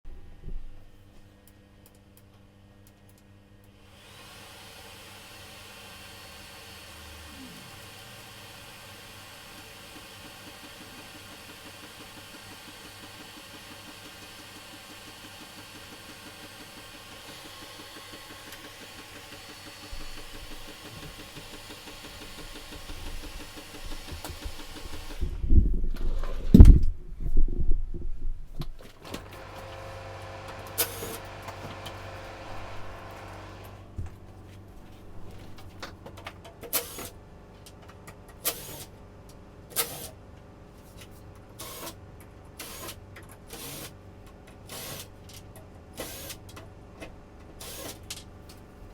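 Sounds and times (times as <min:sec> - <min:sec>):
loud low knocks and thumps: 0:25.2 - 0:28.8
hazer motor humming: 0:29.2 - 0:35.8.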